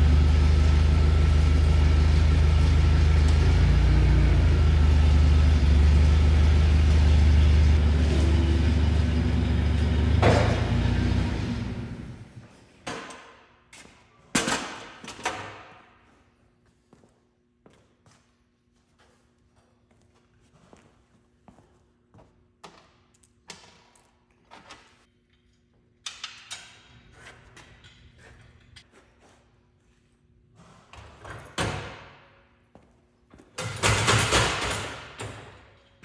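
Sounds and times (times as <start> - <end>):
machine humming: 0.0 - 12.4.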